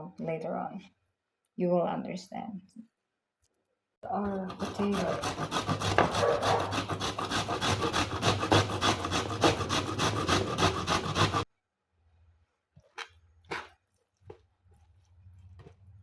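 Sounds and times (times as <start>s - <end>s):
vegetable scraped against blade: 4.3s - 11.5s.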